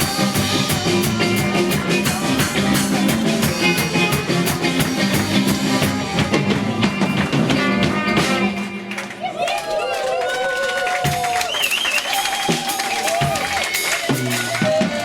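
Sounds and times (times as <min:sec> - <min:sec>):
drum kit beat: 0:00.0 - 0:09.0, 0:11.0 - 0:15.0
electric guitar: 0:00.0 - 0:09.2.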